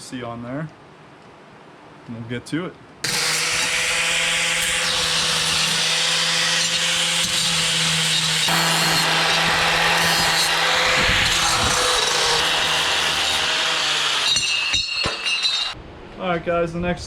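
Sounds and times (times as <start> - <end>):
angle grinder grinding metal: 3.0 - 15.8.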